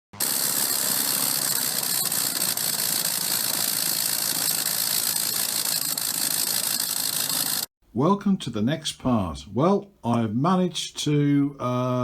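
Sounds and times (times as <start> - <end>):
steady running hum: 0.2 - 7.7.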